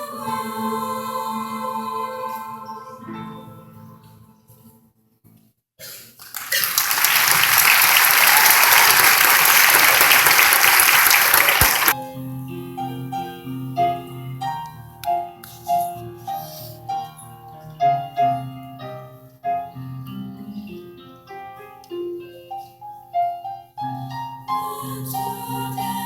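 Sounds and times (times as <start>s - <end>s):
audience applauding: 6.2s - 12.0s
piano playing: 11.5s - 26.0s.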